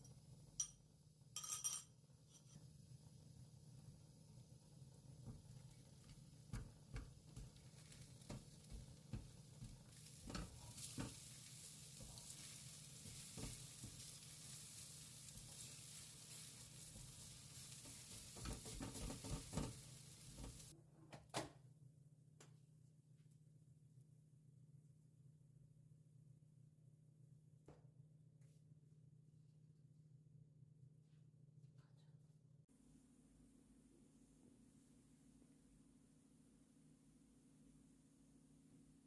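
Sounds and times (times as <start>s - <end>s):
eggs sizzling in frying pan: 1.9s - 20.8s
spatula tapping pan: 5.2s - 14.4s, 16.3s - 20.7s.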